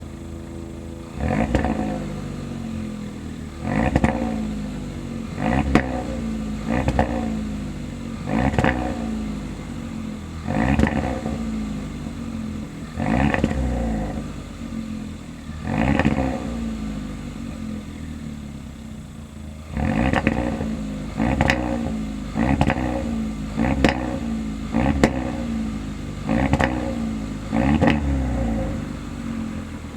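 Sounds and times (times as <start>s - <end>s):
exhaust crackles and pops: 0.0s - 17.7s, 19.0s - 29.9s
car engine revving: 0.0s - 29.9s.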